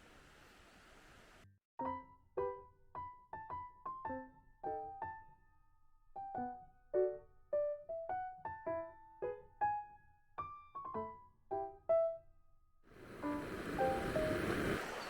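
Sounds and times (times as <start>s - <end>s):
gentle piano melody: 1.8s - 12.4s, 13.0s - 15.0s.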